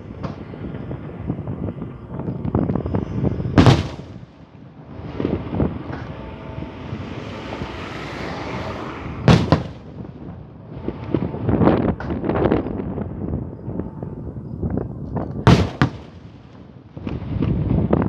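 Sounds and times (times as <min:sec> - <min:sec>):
fireworks bangs: 0:00.0 - 0:18.0
small firework pops: 0:00.1 - 0:04.6, 0:05.2 - 0:06.2, 0:09.3 - 0:10.1, 0:10.9 - 0:12.9, 0:14.8 - 0:18.0.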